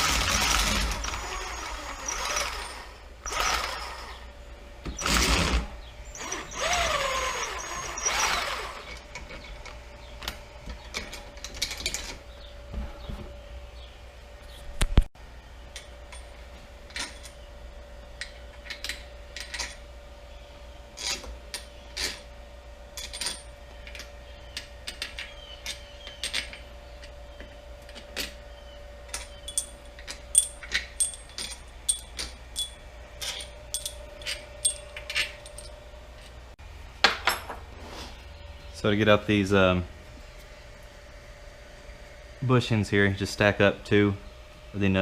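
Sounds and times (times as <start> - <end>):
metal tools and parts clinking: 10.7 - 12.3, 15.7 - 17.5, 18.2 - 19.8, 22.9 - 27.2, 29.0 - 36.4.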